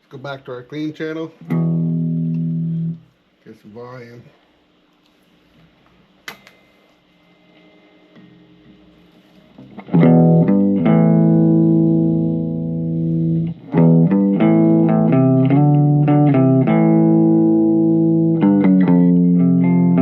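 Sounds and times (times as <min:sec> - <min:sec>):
clean electric guitar chords: 0:01.4 - 0:03.1, 0:08.3 - 0:20.0.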